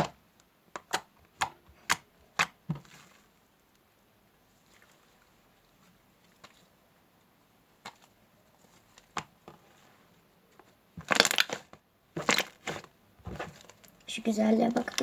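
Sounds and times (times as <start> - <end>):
slime crackling squelch: 11.0 - 15.0.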